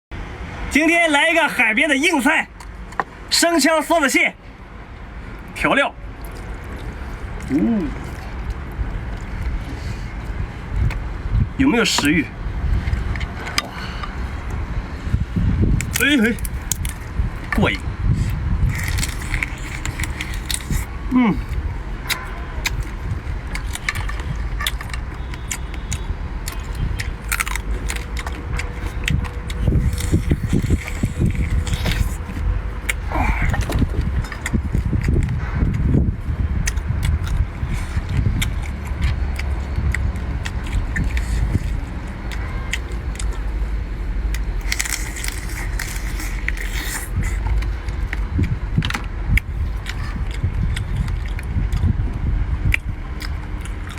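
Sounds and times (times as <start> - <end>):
crunching crab shell: 15.7 - 17.6, 18.6 - 35.4, 36.6 - 43.6, 44.4 - 51.9
low rumble: 26.0 - 53.9.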